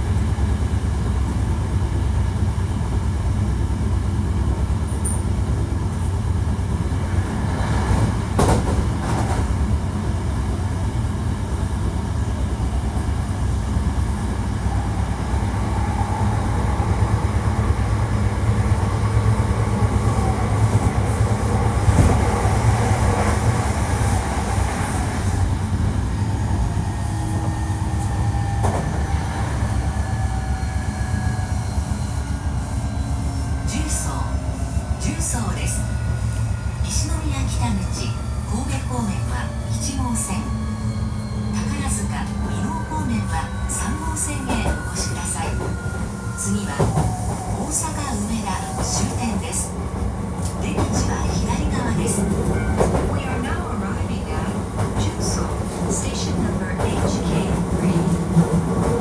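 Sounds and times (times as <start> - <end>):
train wheels rumbling on rail: 0.0 - 59.0
rail-joint clicks: 4.9 - 6.2, 7.7 - 9.6, 41.3 - 59.0.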